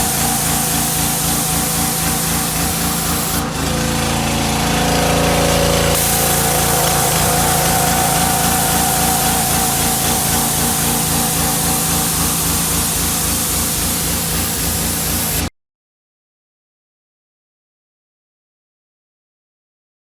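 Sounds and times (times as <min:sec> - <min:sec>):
high-pressure water spray hiss: 0:00.0 - 0:15.5
pressure washer engine: 0:00.0 - 0:15.5.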